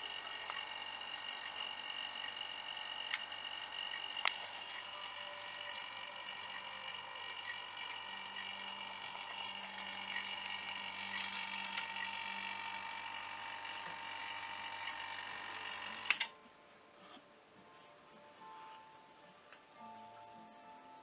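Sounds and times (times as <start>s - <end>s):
small electric machine humming: 0.0s - 16.3s.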